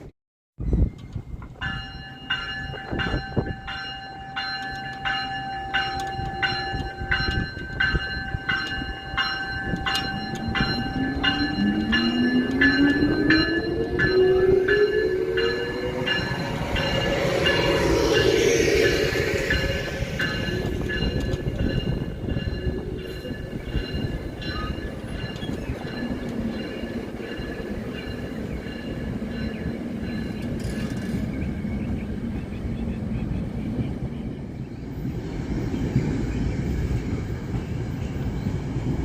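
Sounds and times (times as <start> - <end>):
train bell ringing: 0.6 - 32.0.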